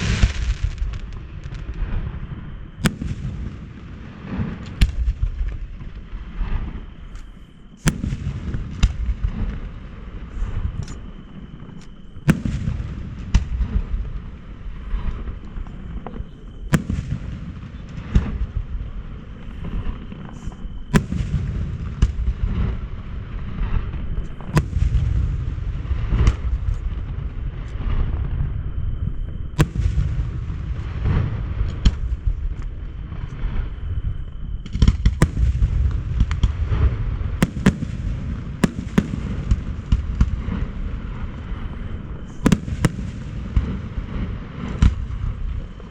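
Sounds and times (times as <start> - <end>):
fireworks sharp bangs: 0.0 - 6.9, 7.8 - 28.4, 29.6 - 33.6, 34.6 - 45.9
fireworks shell bursts rumbling: 34.7 - 45.9.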